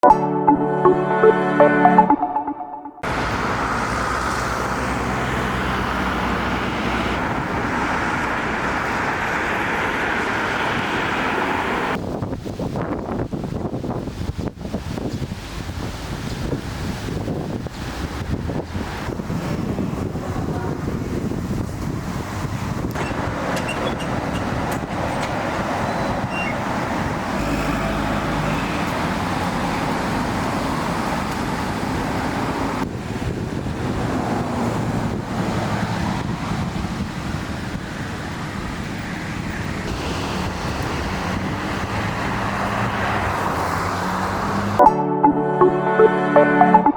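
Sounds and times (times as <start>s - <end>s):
low engine hum: 3.0s - 12.0s
passing vehicles rushing: 3.0s - 12.8s, 16.4s - 44.8s
street traffic roar: 3.0s - 44.9s.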